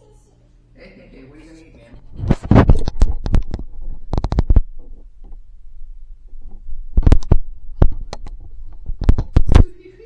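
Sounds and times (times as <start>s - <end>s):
sharp taps and knocks: 2.6s - 5.4s, 6.5s - 9.6s.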